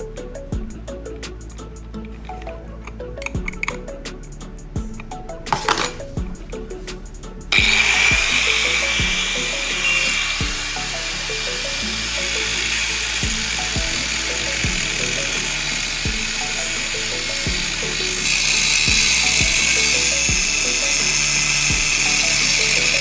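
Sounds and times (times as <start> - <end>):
background music with beat: 0.0 - 23.0
angle grinder whining: 4.9 - 6.9, 7.5 - 23.0.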